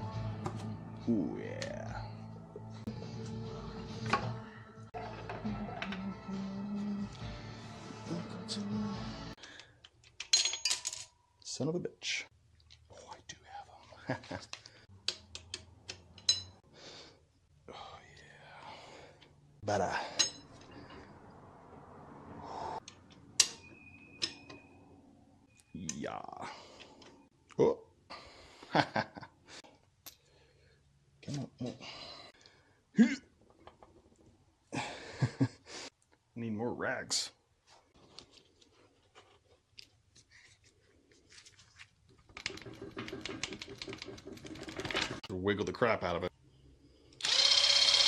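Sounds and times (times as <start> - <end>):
metal tools clinking: 10.2 - 11.2, 16.1 - 16.6, 20.0 - 21.0
tools clicking and scraping: 14.5 - 16.6, 22.8 - 24.7
rapid clicking: 42.3 - 45.2.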